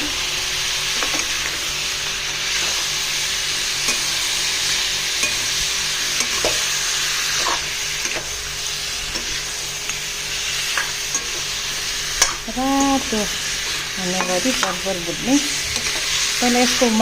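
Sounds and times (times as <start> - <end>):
meat sizzling in oil: 0.0 - 17.0
spatula scraping pan: 3.6 - 17.0.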